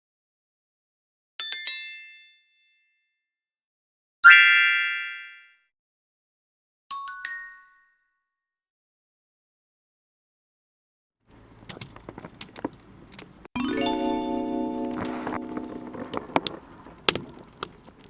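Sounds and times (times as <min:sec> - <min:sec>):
bright chime dings: 0:13.6 - 0:16.6.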